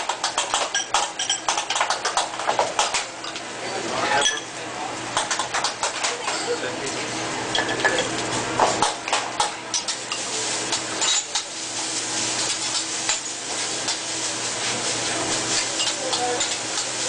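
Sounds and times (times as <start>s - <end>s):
food sizzling: 0.0s - 4.2s, 6.9s - 17.0s
metal utensils clanking on griddle: 7.5s - 8.2s, 9.7s - 11.6s, 12.3s - 17.0s.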